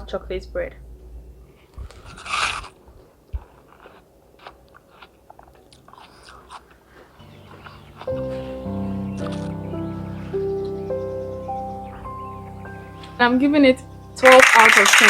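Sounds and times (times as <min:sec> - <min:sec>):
quiet chewing: 0:01.6 - 0:10.8.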